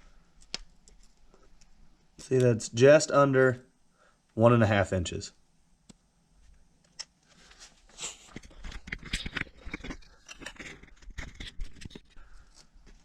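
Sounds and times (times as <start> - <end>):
scraping and clicking of tools: 6.8 - 13.0.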